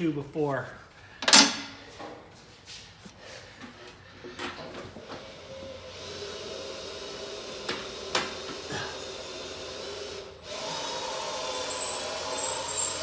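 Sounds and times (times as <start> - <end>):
hand tools scraping on metal: 11.6 - 13.0.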